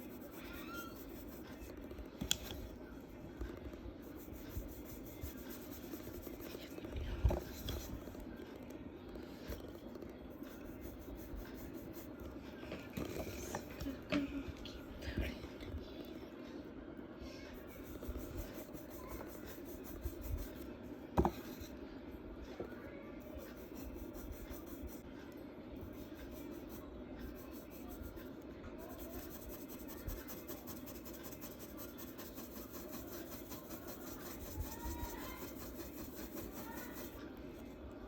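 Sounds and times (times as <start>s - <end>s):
charcoal rubbing on paper: 0.0s - 2.5s, 4.0s - 6.7s, 10.4s - 12.2s, 17.6s - 20.6s, 23.3s - 25.0s, 25.9s - 37.2s.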